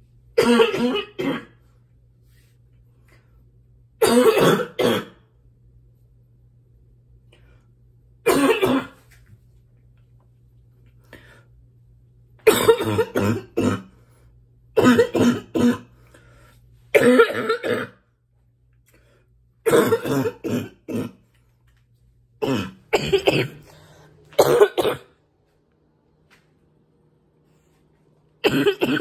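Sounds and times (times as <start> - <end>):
woman coughing harshly: 0.4 - 1.6, 4.0 - 5.2, 8.3 - 9.0, 12.4 - 13.9, 14.8 - 16.0, 16.9 - 18.0, 19.6 - 21.2, 22.4 - 23.7, 24.4 - 25.2, 28.4 - 29.0.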